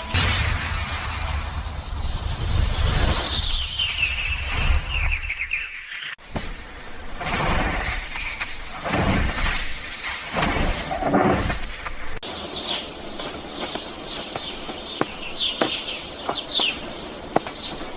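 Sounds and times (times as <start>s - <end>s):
high falling bird chirps: 0.2s - 7.0s, 12.2s - 17.9s
rustling and bumping: 6.2s - 17.9s.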